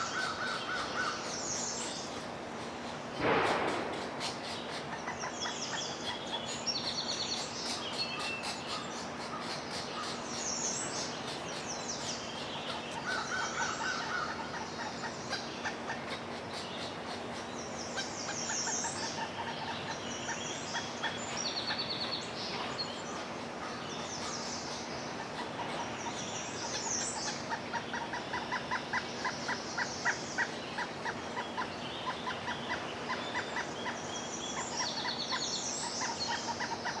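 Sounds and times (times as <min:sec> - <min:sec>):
birds chirping: 0:00.0 - 0:37.0
rapid pulsed bird notes: 0:00.0 - 0:37.0.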